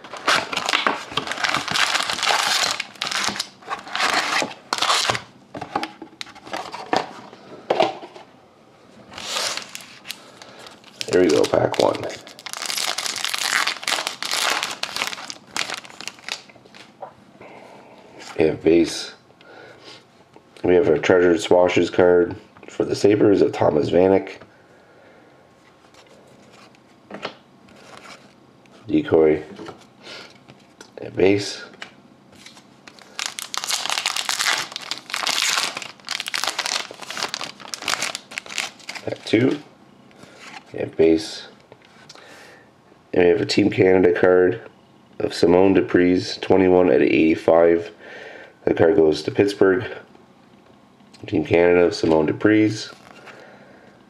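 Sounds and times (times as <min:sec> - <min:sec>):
wrapper tearing and crinkling: 0:00.0 - 0:05.3, 0:09.2 - 0:16.9, 0:32.4 - 0:39.4.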